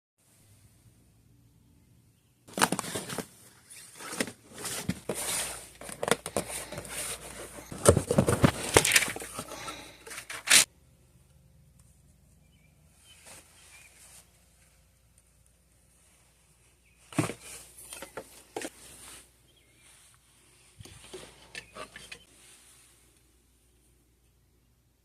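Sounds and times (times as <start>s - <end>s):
close rustling and scraping: 2.5s - 10.7s, 15.8s - 23.2s.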